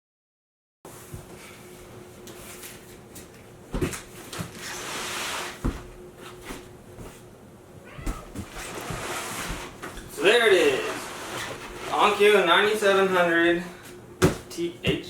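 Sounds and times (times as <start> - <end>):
cardboard rustling scrape: 4.5 - 7.2, 8.1 - 9.9, 10.6 - 12.4
sharp knocks on cardboard box: 14.2 - 15.0.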